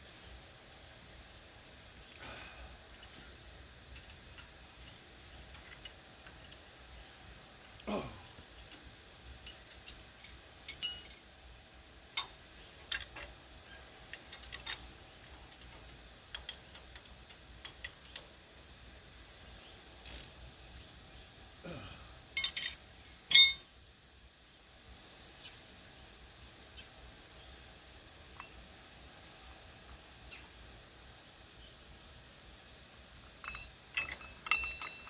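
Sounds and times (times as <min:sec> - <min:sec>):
metallic clicks and clinks: 0:02.2 - 0:06.6, 0:09.4 - 0:11.2, 0:12.2 - 0:13.4, 0:14.1 - 0:14.9, 0:15.5 - 0:18.3, 0:20.1 - 0:20.3, 0:22.4 - 0:23.7, 0:33.4 - 0:35.0.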